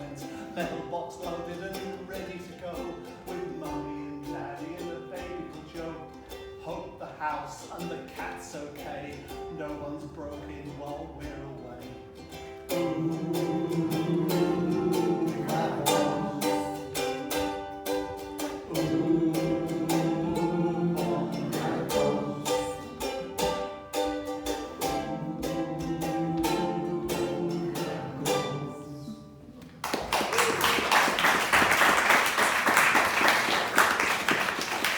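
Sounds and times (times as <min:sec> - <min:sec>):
acoustic folk song: 0:00.0 - 0:34.9
audience applause: 0:29.8 - 0:34.9.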